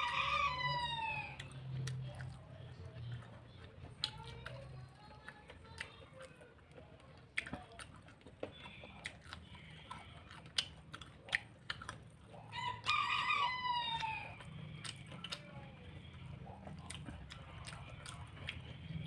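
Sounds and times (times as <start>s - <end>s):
rooster crowing: 0.0s - 1.5s, 12.5s - 14.5s
small clicks and taps of eating: 1.4s - 12.4s, 14.0s - 19.0s.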